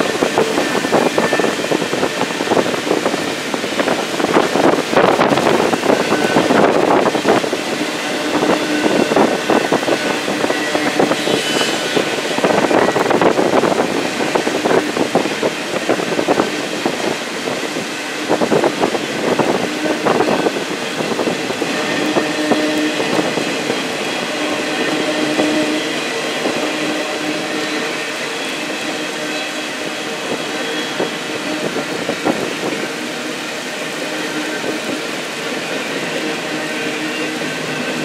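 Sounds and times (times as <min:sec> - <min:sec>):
train wheels clattering over rails: 0:00.0 - 0:38.0.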